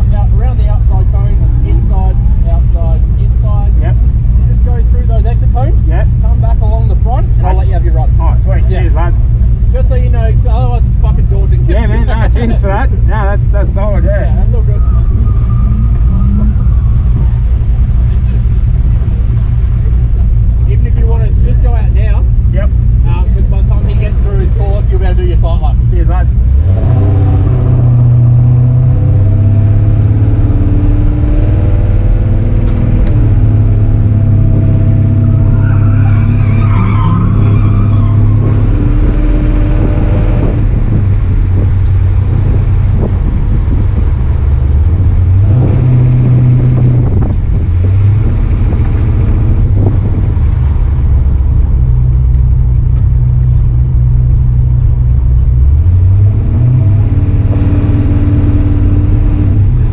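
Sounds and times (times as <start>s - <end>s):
truck engine accelerating: 0.0s - 59.9s
high-pitched squeal: 14.4s - 18.4s, 35.1s - 40.6s.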